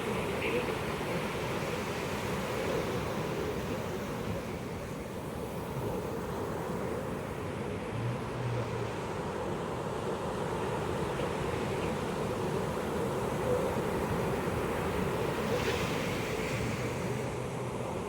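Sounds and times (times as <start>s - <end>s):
ocean surf washing onto beach: 12.5s - 18.0s.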